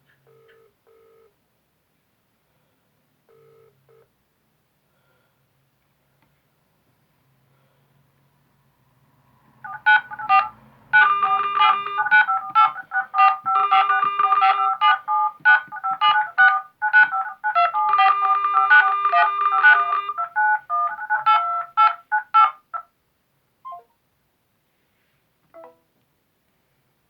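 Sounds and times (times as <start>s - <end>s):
mobile phone ringtone: 9.7s - 22.6s.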